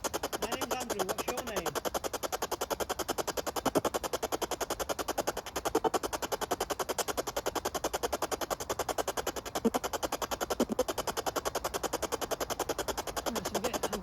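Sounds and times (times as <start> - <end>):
radio scanner sweeping static: 0.0 - 14.0
fragments of radio sound: 0.3 - 1.9, 13.3 - 14.0.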